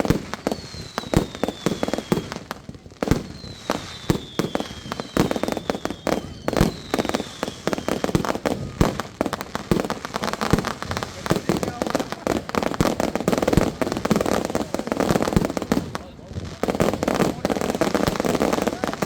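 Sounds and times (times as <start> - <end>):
firework whistles falling in pitch: 0.0 - 9.1
fireworks bangs and crackles: 0.0 - 19.0.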